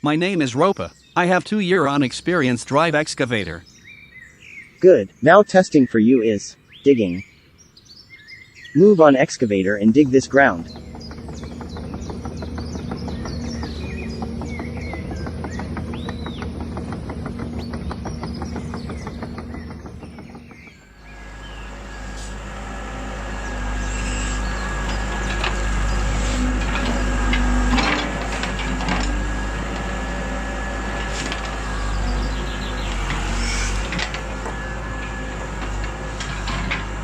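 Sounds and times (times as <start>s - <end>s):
birds chirping: 0.0s - 37.0s
steady whine over deep hum: 9.8s - 37.0s
toy excavator motors whirring: 9.8s - 37.0s
steady ticking: 9.9s - 20.8s
clicks and knocks: 10.3s - 20.8s.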